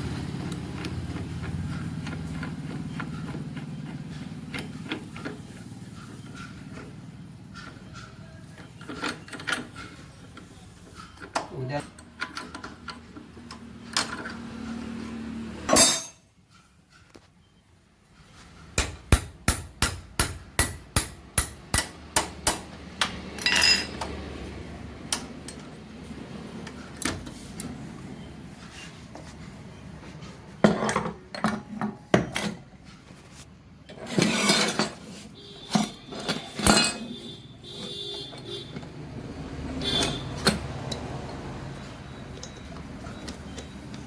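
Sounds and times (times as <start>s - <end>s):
hammer tapping on metal: 18.8s - 23.7s
metal clinks and clatter: 23.4s - 24.1s, 35.6s - 37.3s.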